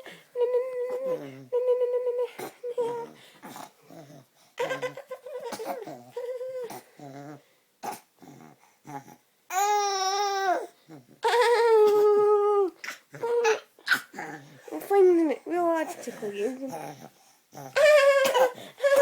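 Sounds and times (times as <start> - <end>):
baby breathy sounds: 15.9 - 19.0
baby squealing: 17.8 - 19.0.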